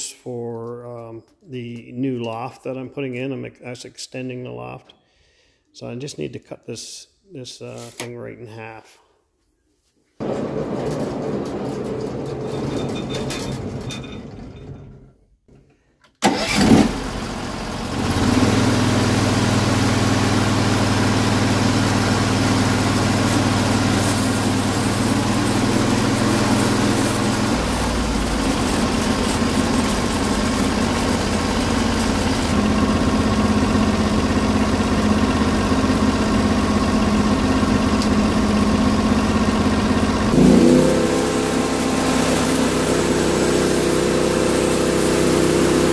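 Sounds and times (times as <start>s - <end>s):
sawmill engine running: 10.2s - 14.8s, 16.2s - 45.9s.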